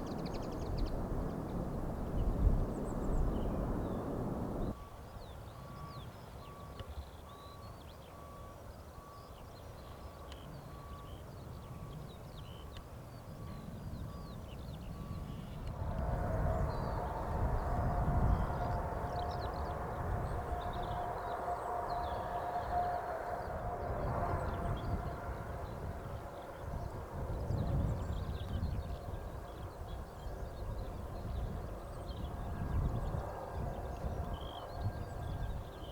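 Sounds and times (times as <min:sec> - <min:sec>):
birds chirping: 0:00.0 - 0:04.7
jet engines whining: 0:00.0 - 0:04.8
low distant rumble: 0:00.0 - 0:04.8.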